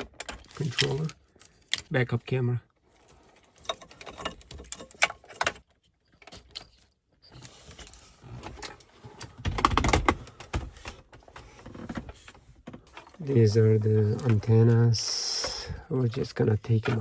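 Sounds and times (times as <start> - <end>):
cables rattling: 0.2 - 2.0.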